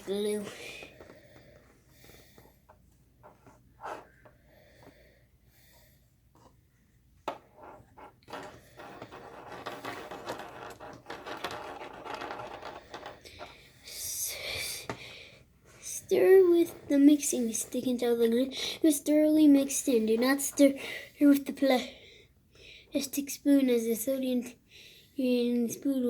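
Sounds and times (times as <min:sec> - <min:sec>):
scratchy rustling and scraping: 0:07.4 - 0:13.6.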